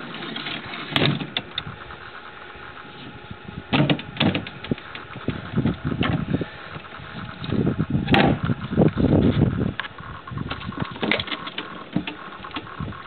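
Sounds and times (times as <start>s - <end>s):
knocks and clunks: 3.7s - 6.3s, 7.4s - 12.9s.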